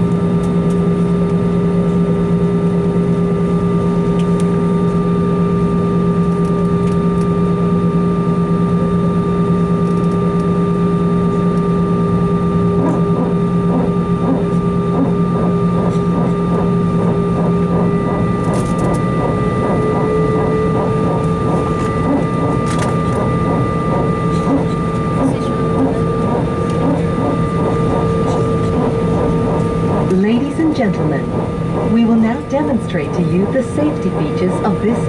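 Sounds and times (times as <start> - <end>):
aircraft cabin hum and whine: 0.0 - 35.0
rhythmic pulsing: 12.1 - 35.0.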